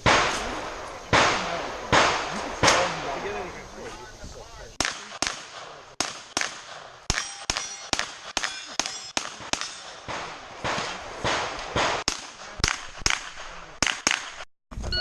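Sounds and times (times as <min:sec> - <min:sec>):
rapid gunshots: 0:00.0 - 0:03.5, 0:04.8 - 0:14.5
steel targets ringing: 0:07.1 - 0:10.1.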